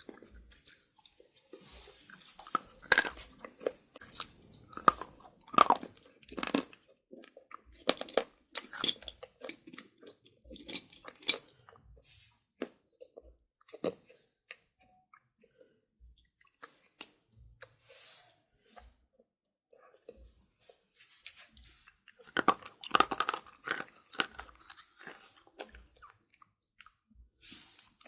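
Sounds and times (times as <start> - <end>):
slate crunching between teeth: 2.1 - 11.8, 22.1 - 27.0.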